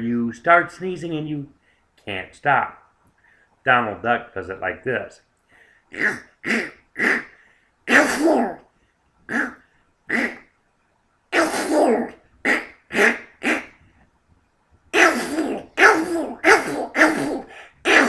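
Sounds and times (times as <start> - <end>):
man imitating cartoon duck sneezing: 5.9 - 7.3, 7.9 - 8.6, 9.3 - 10.4, 11.4 - 13.8, 14.9 - 18.0.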